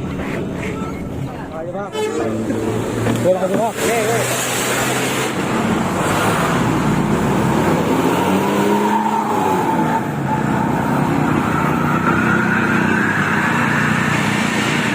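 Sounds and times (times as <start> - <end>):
bus diesel engine whining: 0.0 - 14.9.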